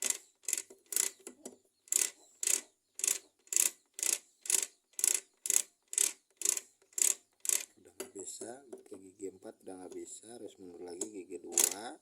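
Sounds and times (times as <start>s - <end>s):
motorcycle gearbox clicking: 10.9s - 11.8s.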